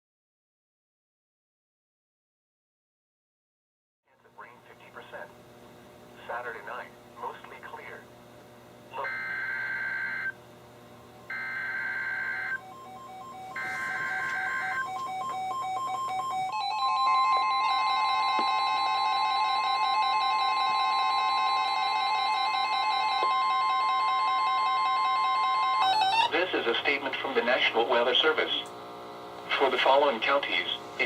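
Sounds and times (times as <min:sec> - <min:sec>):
weather radios beeping alarms: 0:08.9 - 0:10.4, 0:11.3 - 0:27.9
steady warning alarm tone: 0:08.9 - 0:26.5
buzzing digital data bursts: 0:11.3 - 0:14.8.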